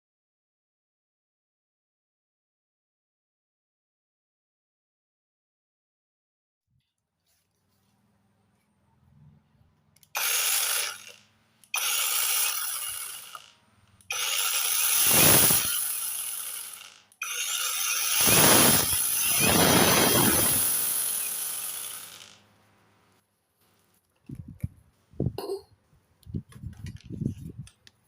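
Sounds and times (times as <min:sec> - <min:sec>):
cordless angle grinder running: 0:10.1 - 0:22.5.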